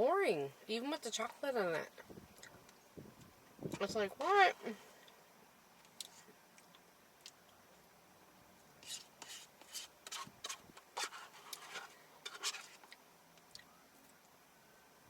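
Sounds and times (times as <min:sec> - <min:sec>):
spoon scraping in a cup: 0:08.8 - 0:12.9.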